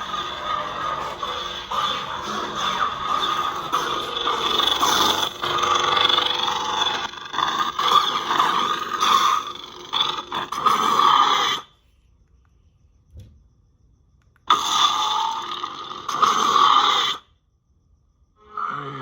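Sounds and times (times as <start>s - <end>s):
lightsaber humming: 0.0s - 11.4s.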